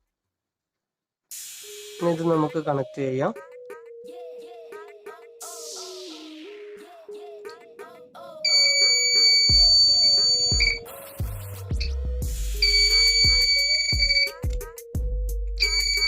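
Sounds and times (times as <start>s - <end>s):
background music with beat: 1.3s - 16.0s
electronic buzzer high tone: 8.5s - 10.8s, 12.6s - 14.4s, 15.6s - 16.0s.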